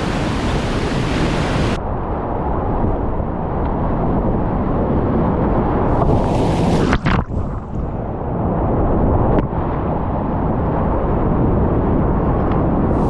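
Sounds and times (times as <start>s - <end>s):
whitewater rapids rushing: 0.0s - 1.8s.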